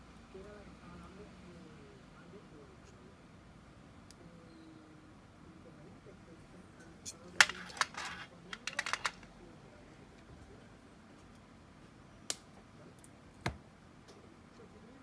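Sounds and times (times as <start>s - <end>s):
clicks of small parts handled: 7.1s - 9.3s.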